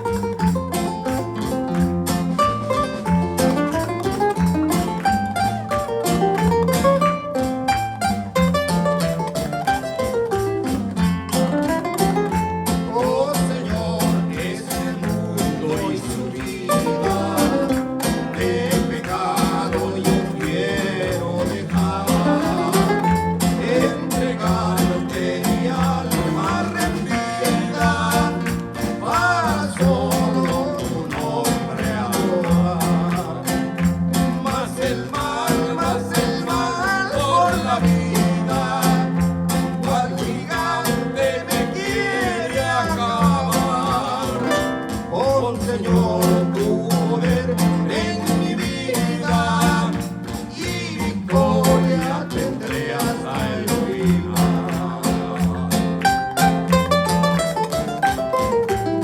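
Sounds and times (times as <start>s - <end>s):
guitar accompaniment: 0.0s - 59.0s
person singing praise song: 12.8s - 57.2s.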